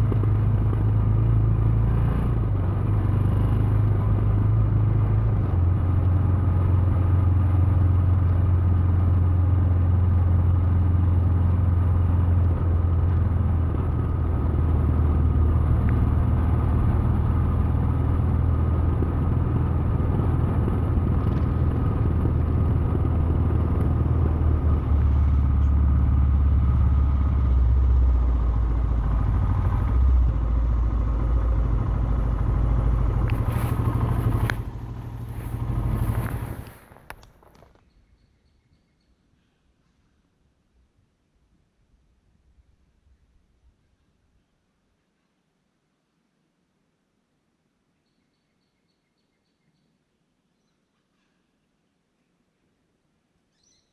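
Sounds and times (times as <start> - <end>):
motorcycle engine running: 0.0 - 37.6.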